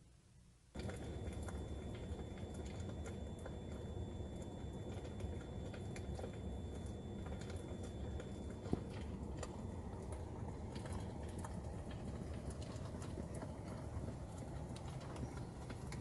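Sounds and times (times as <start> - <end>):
campfire crackling: 0.7 - 16.0.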